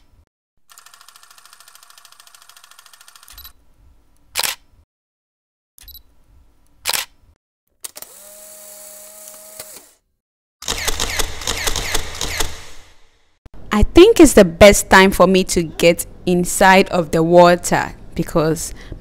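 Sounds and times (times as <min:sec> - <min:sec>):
camera shutter clicks: 0:04.3 - 0:04.6, 0:06.8 - 0:07.2, 0:10.6 - 0:12.8.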